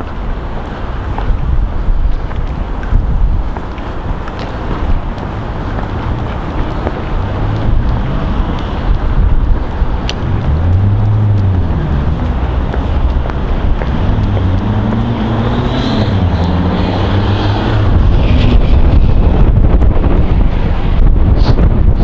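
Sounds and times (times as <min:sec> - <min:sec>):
wind buffeting microphone: 0:00.0 - 0:22.0
passing vehicle engine: 0:04.4 - 0:21.9.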